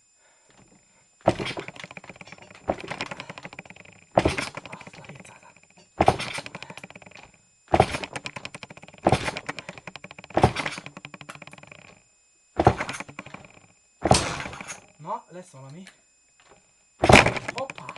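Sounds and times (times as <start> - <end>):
small engine cranking and clattering: 1.3 - 12.0, 12.6 - 14.9, 17.0 - 17.9.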